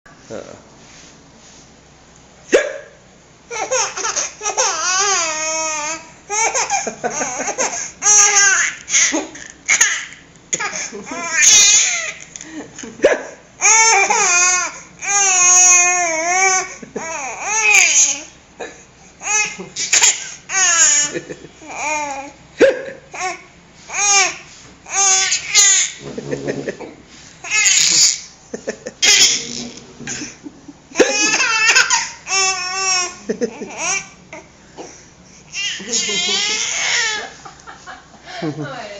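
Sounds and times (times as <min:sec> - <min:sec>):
baby laughing hysterically: 0:03.5 - 0:05.5, 0:06.3 - 0:10.0, 0:24.9 - 0:26.0, 0:29.0 - 0:34.1, 0:35.5 - 0:37.6.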